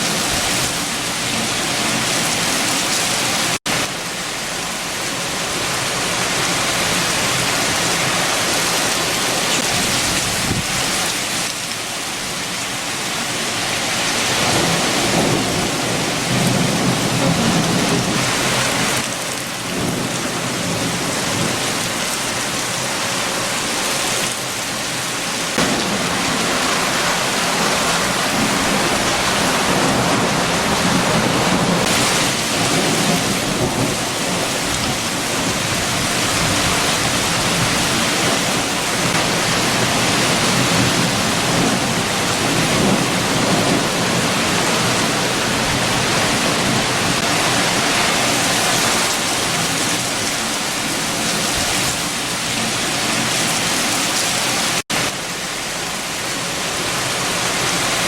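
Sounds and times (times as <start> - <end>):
heavy rain: 0.0 - 58.0
strong wind rumble: 6.7 - 11.5, 13.5 - 54.8.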